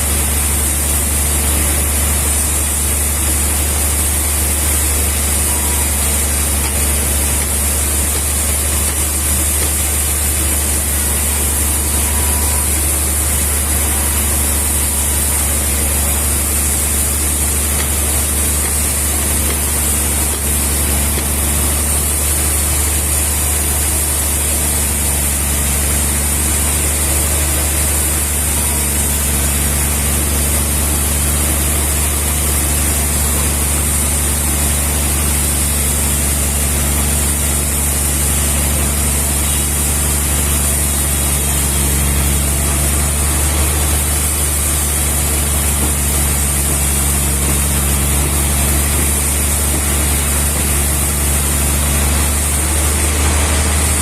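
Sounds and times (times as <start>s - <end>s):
sawmill machinery humming: 0.0s - 54.0s.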